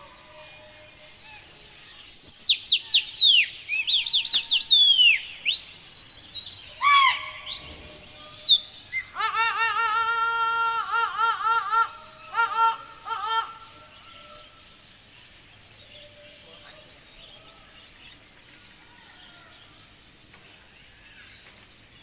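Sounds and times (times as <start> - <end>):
shrill whistling: 2.1 - 9.2.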